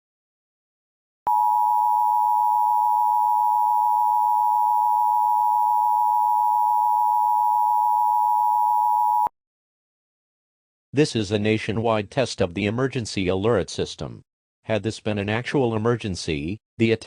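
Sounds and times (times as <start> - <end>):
two-tone alert tone: 1.3 - 9.3.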